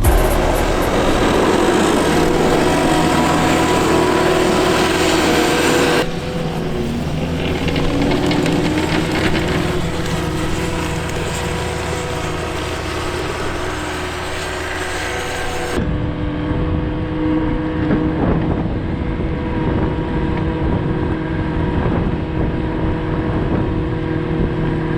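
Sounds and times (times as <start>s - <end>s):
heavy vehicle engine running: 0.0s - 17.9s.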